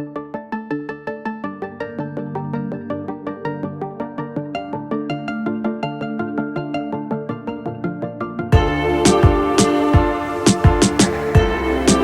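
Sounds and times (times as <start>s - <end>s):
instrumental music of quick notes: 8.6s - 12.0s.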